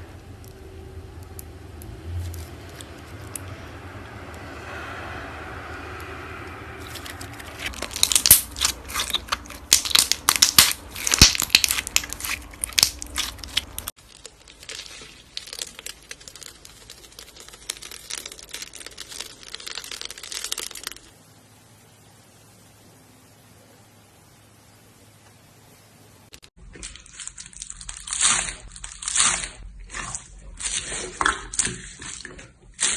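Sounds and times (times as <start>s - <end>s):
slime squishing and crackling: 5.8s - 21.2s, 26.6s - 32.9s.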